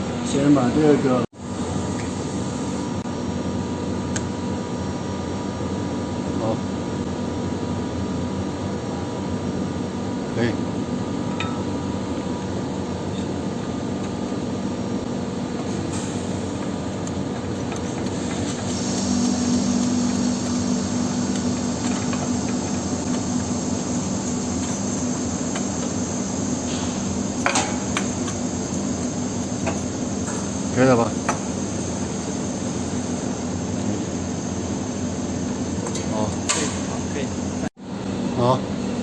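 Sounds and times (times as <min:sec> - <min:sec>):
soldering machine hum and hiss: 0:00.0 - 0:39.0.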